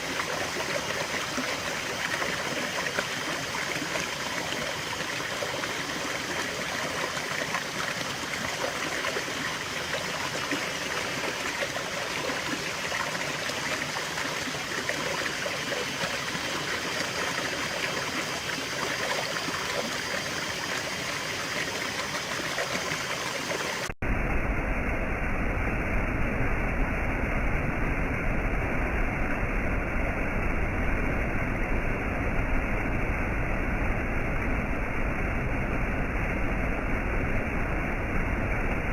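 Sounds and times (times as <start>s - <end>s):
stream rushing: 0.0s - 24.3s.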